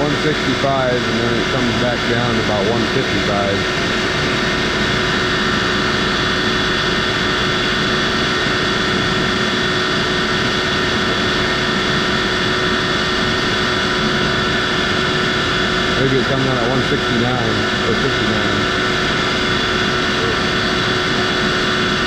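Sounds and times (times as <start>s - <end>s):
air compressor roaring: 0.0s - 22.0s
compressor whine: 0.0s - 22.0s.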